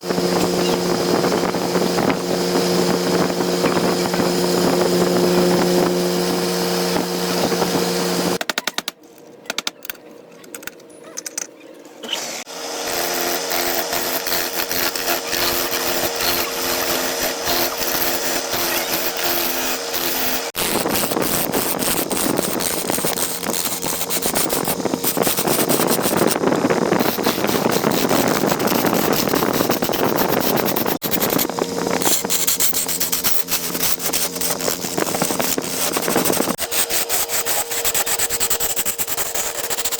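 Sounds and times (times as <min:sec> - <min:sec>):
lathe motor humming: 0:12.4 - 0:28.7
rough scratchy noise with rapid ticks: 0:12.9 - 0:39.9.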